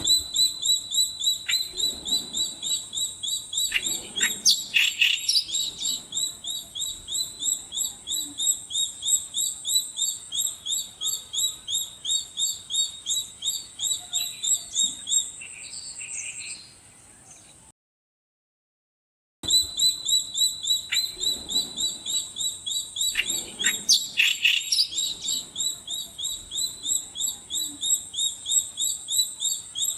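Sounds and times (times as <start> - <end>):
bird chirping: 0.0 - 17.6, 19.4 - 29.9.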